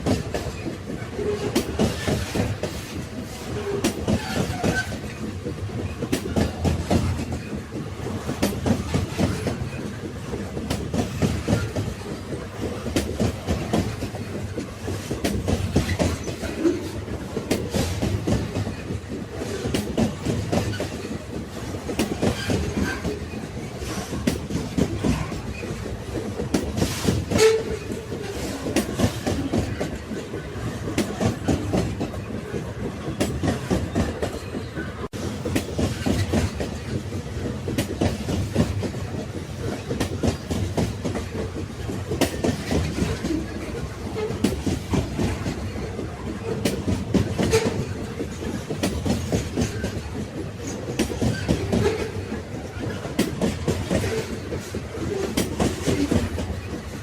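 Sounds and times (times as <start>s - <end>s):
railway carriages rumbling: 0.0s - 57.0s
wheels clickety-clack on rails: 0.0s - 57.0s.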